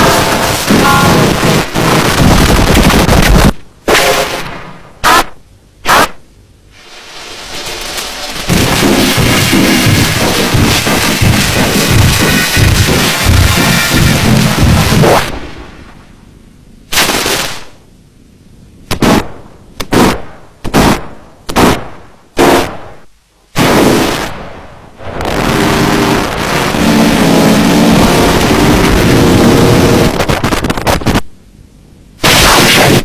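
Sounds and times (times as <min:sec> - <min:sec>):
sudden sound effect bursts: 0:00.0 - 0:03.2, 0:06.7 - 0:15.6
continuous loud sound effect: 0:00.0 - 0:16.3, 0:18.9 - 0:31.2, 0:32.2 - 0:33.0.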